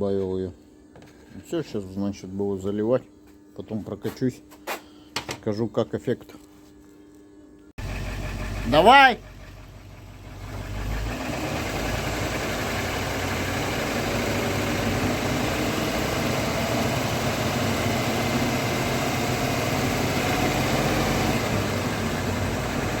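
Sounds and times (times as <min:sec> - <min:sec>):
car engine running: 0:07.8 - 0:23.0.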